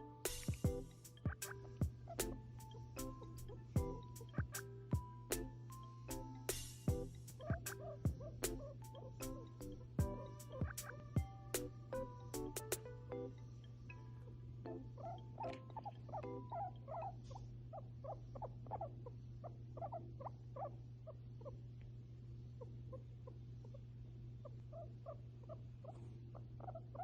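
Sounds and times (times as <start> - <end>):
guinea pig chutting: 3.0 - 4.7, 6.1 - 12.8, 15.0 - 27.0.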